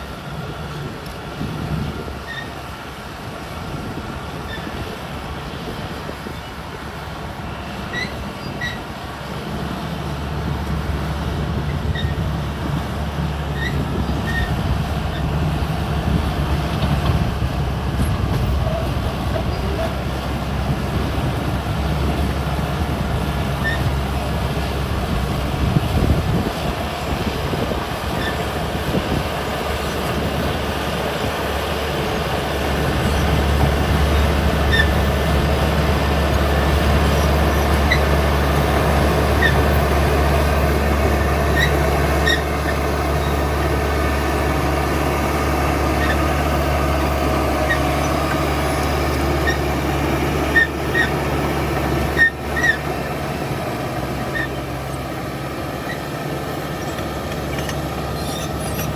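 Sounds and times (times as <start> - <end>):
bulldozer diesel engine under load: 0.0 - 58.9
steel tracks clattering: 0.0 - 58.9
faint squeaks: 56.8 - 58.9.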